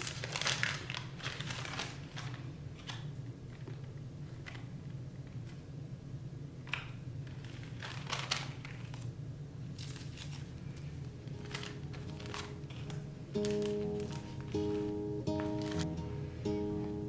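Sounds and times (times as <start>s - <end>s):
packaging crinkling and rustling: 0.0s - 5.7s, 6.7s - 15.9s
guitar music: 11.3s - 17.0s.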